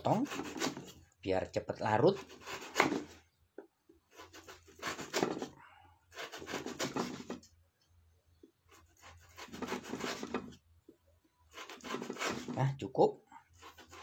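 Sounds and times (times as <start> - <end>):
knife scraping sugar block: 0.0 - 1.1, 2.0 - 3.3, 4.1 - 7.5, 8.6 - 10.6, 11.5 - 12.8, 13.5 - 14.0.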